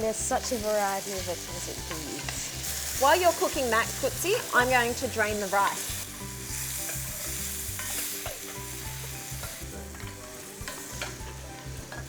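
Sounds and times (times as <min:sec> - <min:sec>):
chicken sizzling in oil: 0:00.0 - 0:12.0
spatula scraping and tapping pan: 0:06.7 - 0:12.0.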